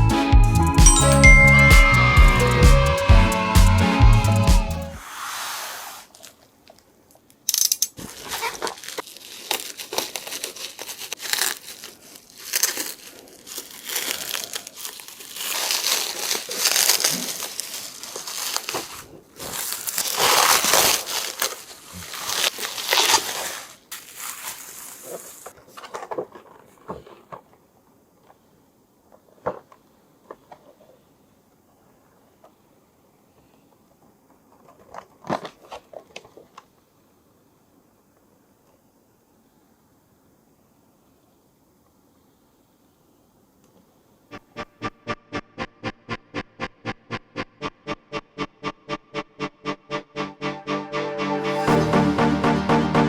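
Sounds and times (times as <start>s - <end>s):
packaging crinkling and rustling: 6.1s - 27.6s.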